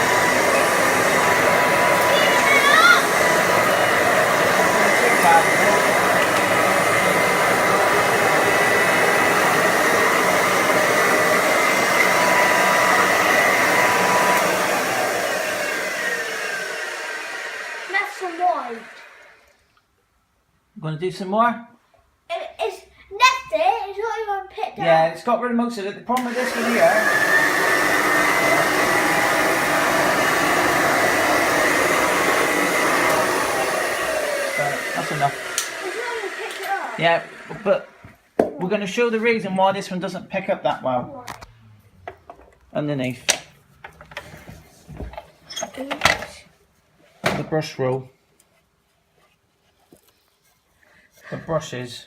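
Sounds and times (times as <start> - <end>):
vacuum cleaner running: 0.0 - 19.6, 26.2 - 38.2.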